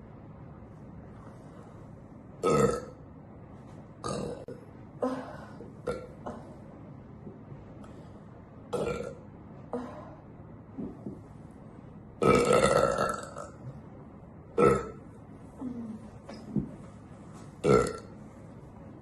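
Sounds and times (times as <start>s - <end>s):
woman burping: 2.4s - 2.9s, 4.0s - 6.5s, 8.7s - 10.0s, 12.2s - 13.6s, 17.6s - 18.0s.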